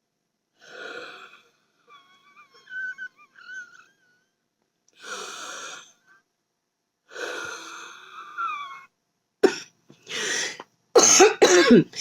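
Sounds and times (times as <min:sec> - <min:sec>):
person wheezing: 0:00.6 - 0:04.3, 0:09.5 - 0:11.8.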